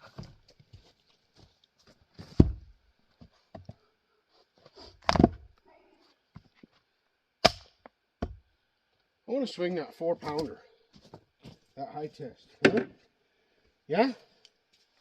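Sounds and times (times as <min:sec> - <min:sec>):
heavy wooden thunks: 0:02.3 - 0:02.7.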